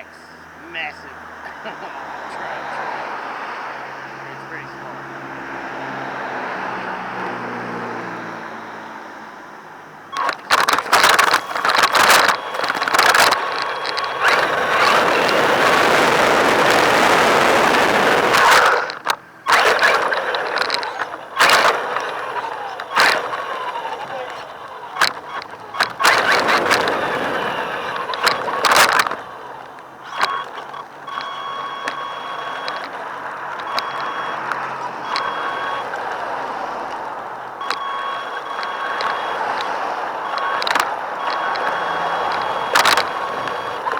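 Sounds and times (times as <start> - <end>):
faint motor whine: 6.9 - 43.9
rc car rushing noise: 10.1 - 43.9.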